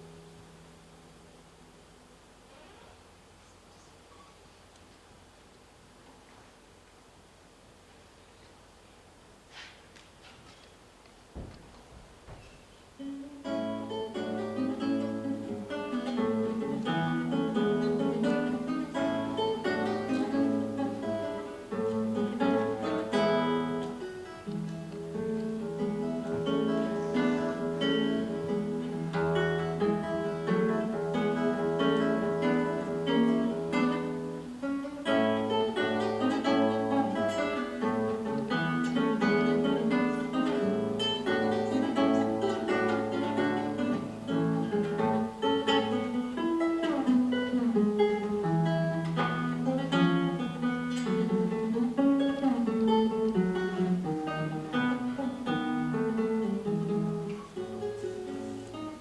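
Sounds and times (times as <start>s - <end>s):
plucked string instrument: 13.0s - 59.0s.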